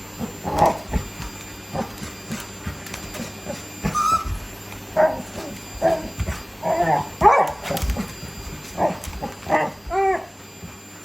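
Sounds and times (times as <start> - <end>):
dog whining yelp: 3.2 - 8.0, 8.8 - 10.4
dog barking: 7.2 - 7.6.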